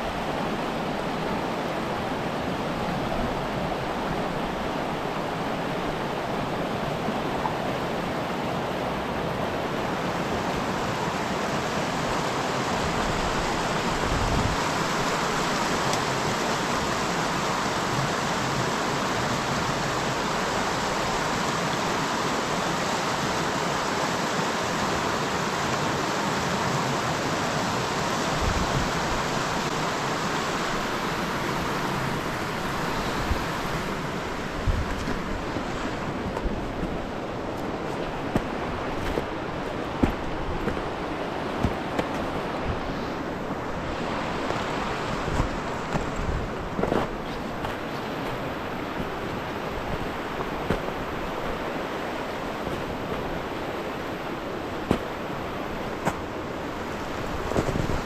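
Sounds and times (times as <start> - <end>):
water rushing: 0.0 - 58.0.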